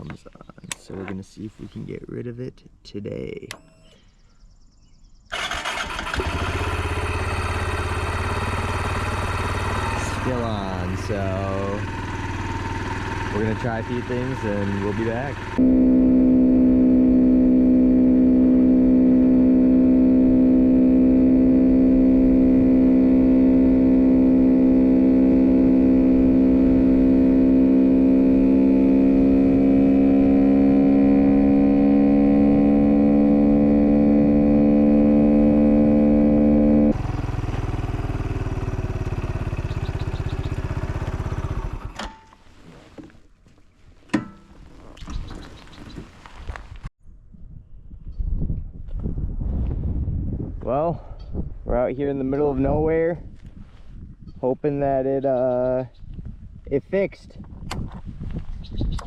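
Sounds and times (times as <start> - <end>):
vehicle engine running: 5.6 - 42.0.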